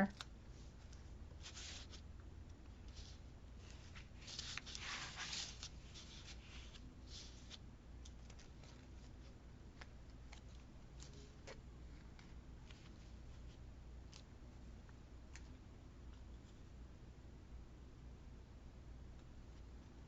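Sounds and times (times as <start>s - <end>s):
paper rustling: 0.0s - 2.0s, 2.7s - 14.3s.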